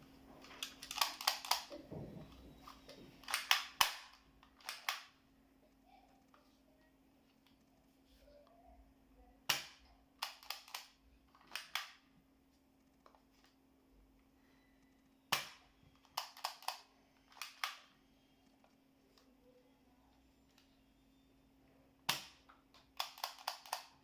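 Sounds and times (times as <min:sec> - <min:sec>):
faint steady hum: 0:00.0 - 0:24.0
toy gun firing snapping shots: 0:00.6 - 0:01.8, 0:03.2 - 0:05.2, 0:09.5 - 0:12.0, 0:15.3 - 0:17.9, 0:22.1 - 0:24.0.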